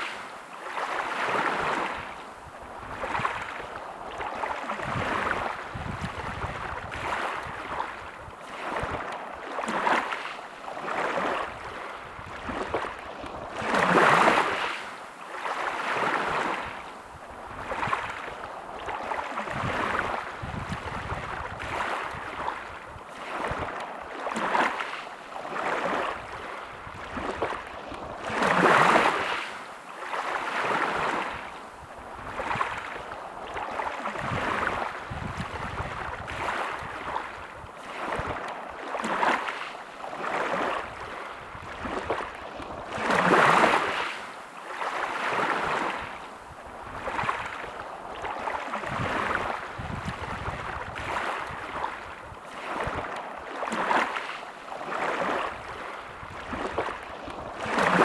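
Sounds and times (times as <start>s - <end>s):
big waves breaking: 0.0s - 58.0s
sea waves washing on shore: 0.0s - 58.0s.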